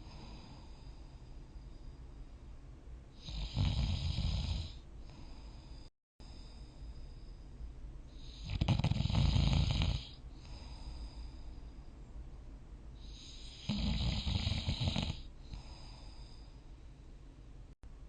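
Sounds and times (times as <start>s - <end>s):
soft breathing: 0.0s - 3.3s, 4.7s - 8.6s, 10.0s - 12.4s, 14.4s - 17.6s
person snoring: 3.2s - 6.5s, 8.2s - 11.4s, 13.0s - 16.5s.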